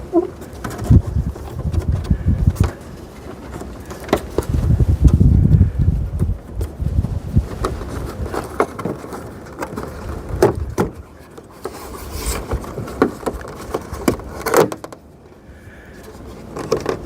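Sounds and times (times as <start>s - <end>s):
plastic rubbing and scraping: 0.0s - 15.3s, 15.9s - 17.0s
plastic parts clicking and knocking: 7.5s - 15.1s, 16.1s - 17.0s.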